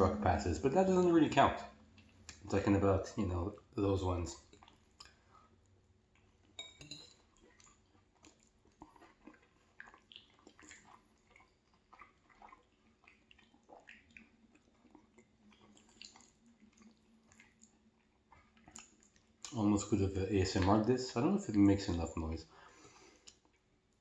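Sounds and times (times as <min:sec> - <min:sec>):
faint wet chewing: 0:01.7 - 0:02.6, 0:04.4 - 0:21.2, 0:22.6 - 0:24.0
light clink: 0:06.6 - 0:07.2.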